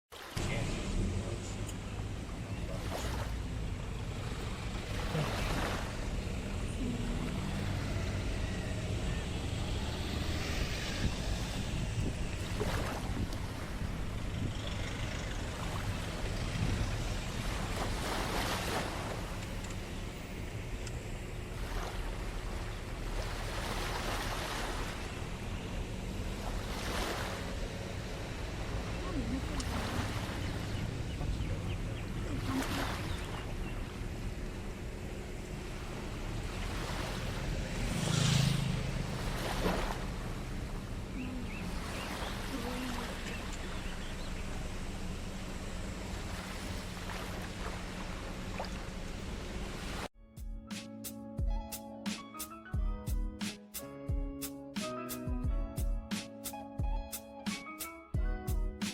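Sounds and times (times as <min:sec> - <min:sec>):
sea waves washing onto shore: 0:00.1 - 0:08.4, 0:12.2 - 0:20.4, 0:21.4 - 0:50.1
wind rumble on microphone: 0:06.8 - 0:19.8.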